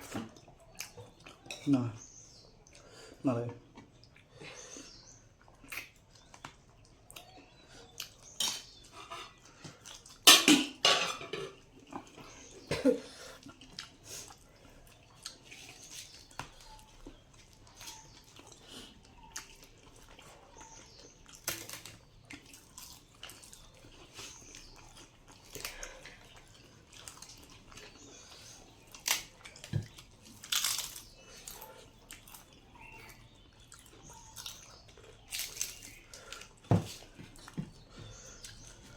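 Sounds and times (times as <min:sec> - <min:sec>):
person chewing with mouth smacks: 0:05.2 - 0:10.2, 0:13.3 - 0:38.9.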